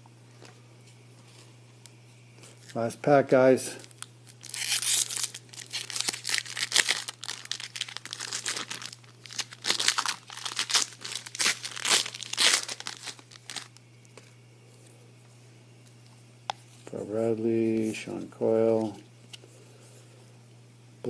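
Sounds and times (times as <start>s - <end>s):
foil wrapper tearing and crinkling: 3.8s - 13.8s.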